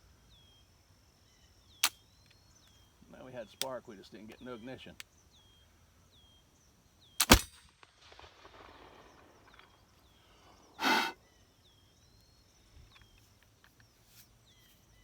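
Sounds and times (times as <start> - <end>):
birds chirping faintly: 0.0 - 15.0
pistol shot crack: 7.2 - 10.2
short breathy rush: 10.2 - 11.2.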